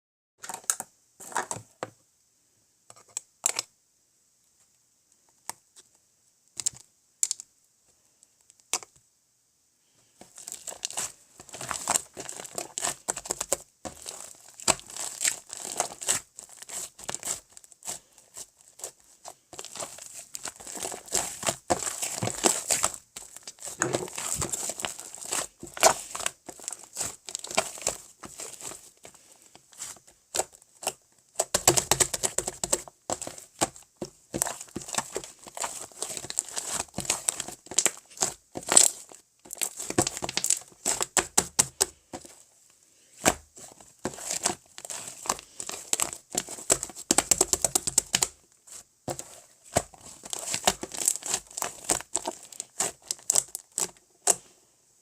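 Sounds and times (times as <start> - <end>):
slime squished crackling and popping: 10.3 - 42.3, 43.2 - 48.4, 49.1 - 54.4.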